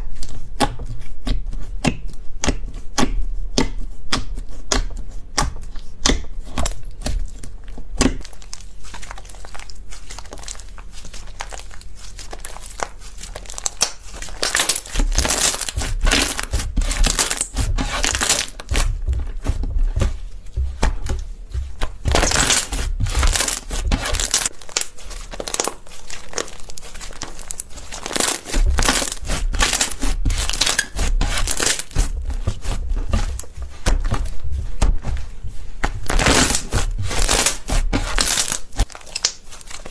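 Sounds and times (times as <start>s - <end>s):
slime squeezed by hand crackling: 8.0s - 19.0s, 21.9s - 33.2s, 36.0s - 39.9s.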